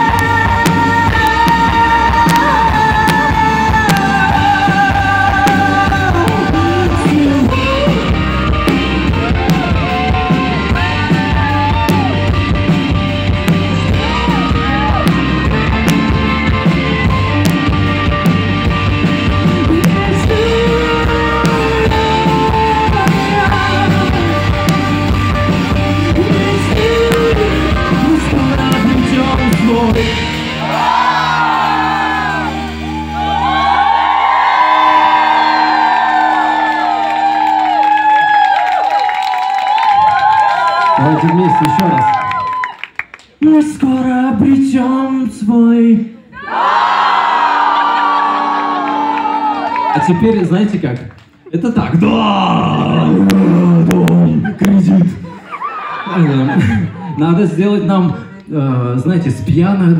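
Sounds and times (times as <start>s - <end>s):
live rock band playing: 0.0s - 37.8s.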